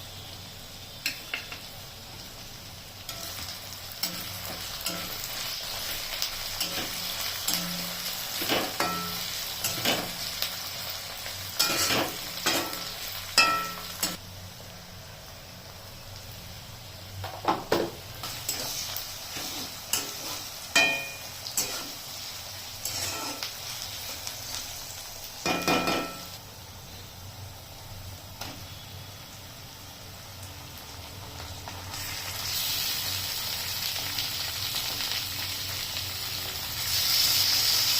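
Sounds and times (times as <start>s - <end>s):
food sizzling: 0.0s - 37.9s
metal spoon knocking on pan: 20.8s - 21.2s, 25.5s - 26.2s.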